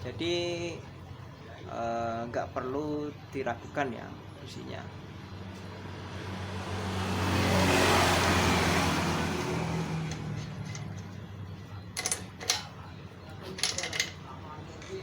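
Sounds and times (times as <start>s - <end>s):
vehicle passing by: 5.0s - 11.6s.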